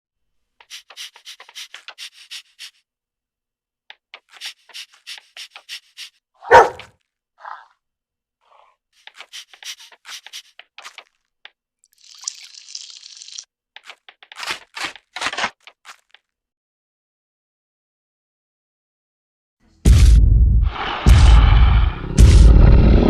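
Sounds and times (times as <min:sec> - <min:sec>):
animal panting: 0:00.6 - 0:02.8, 0:03.9 - 0:07.7, 0:08.4 - 0:11.2.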